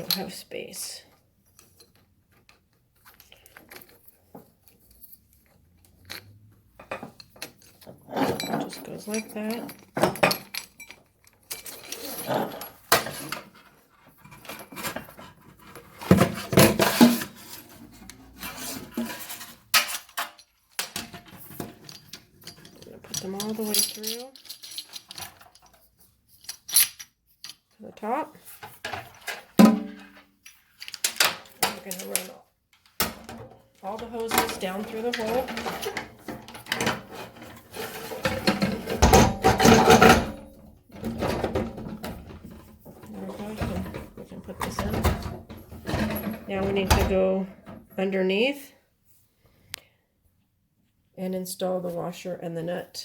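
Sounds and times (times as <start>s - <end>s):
small metal clinks and knocks: 1.4s - 13.4s, 19.8s - 29.4s.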